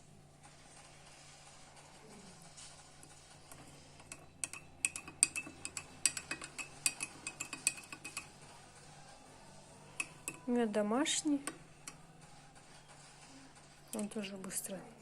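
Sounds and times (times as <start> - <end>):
teaspoon clinking against glass: 4.1 - 8.4.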